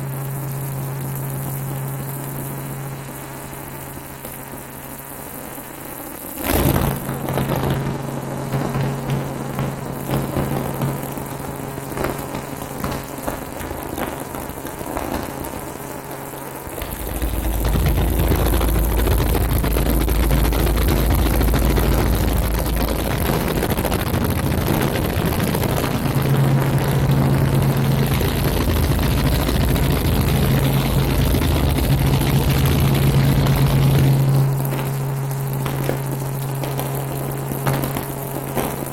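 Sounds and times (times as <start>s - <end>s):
helicopter engine and rotor: 16.8s - 34.6s.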